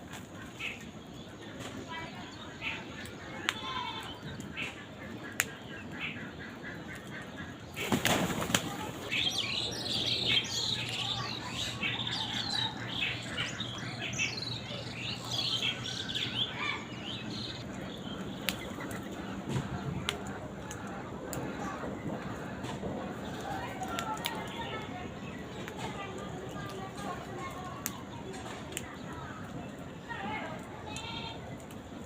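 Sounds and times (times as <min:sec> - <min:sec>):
flock of birds chirping: 0:00.0 - 0:32.0
wings flapping: 0:07.7 - 0:09.4.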